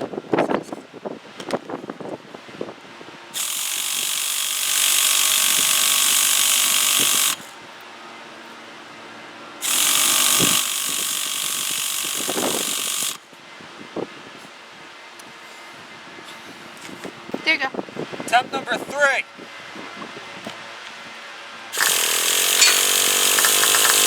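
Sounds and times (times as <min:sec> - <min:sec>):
electric starter whirring: 0:03.4 - 0:07.6, 0:09.6 - 0:13.2, 0:21.8 - 0:24.0.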